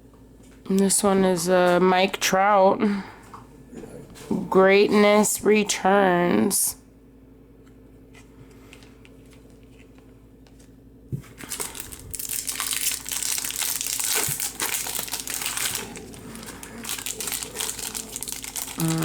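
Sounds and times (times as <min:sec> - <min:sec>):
wrapper crinkling: 0:11.3 - 0:19.0.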